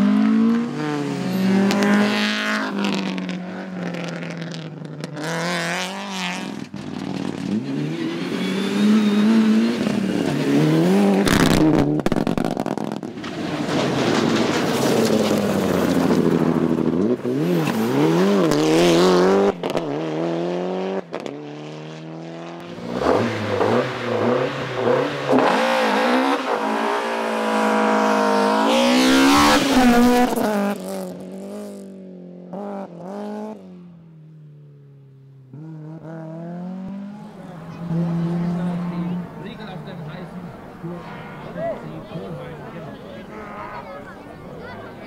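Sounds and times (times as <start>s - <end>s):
rally car engine at full throttle: 0.0s - 34.1s, 34.9s - 45.0s.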